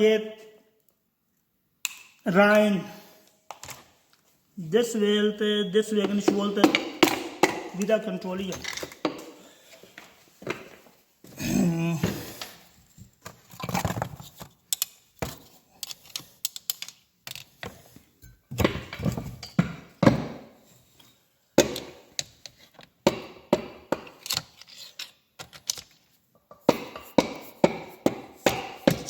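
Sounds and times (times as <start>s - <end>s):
metal tools clinking: 7.8s - 9.1s.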